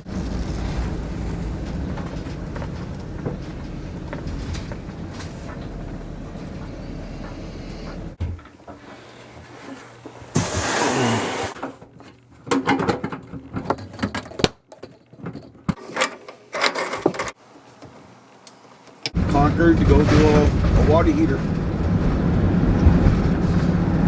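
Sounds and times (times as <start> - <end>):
loud rushing burst: 0.0 - 7.0
road rumble inside vehicle: 0.0 - 8.2, 19.2 - 24.0
uneven clattering knocks: 0.0 - 8.8.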